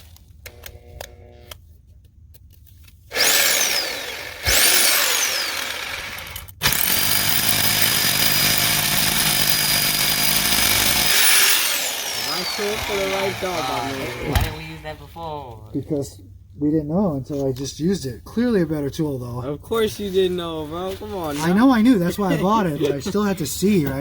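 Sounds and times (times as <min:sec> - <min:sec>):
hammer drill boring into concrete: 0:03.1 - 0:14.7.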